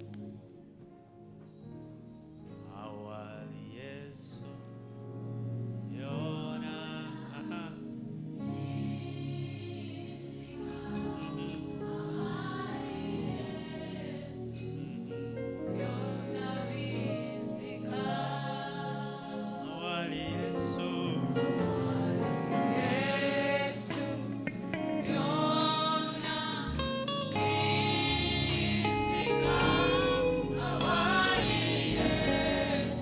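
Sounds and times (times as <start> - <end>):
group of voices singing: 6.1 - 33.0
sustained instrumental chords: 8.2 - 33.0.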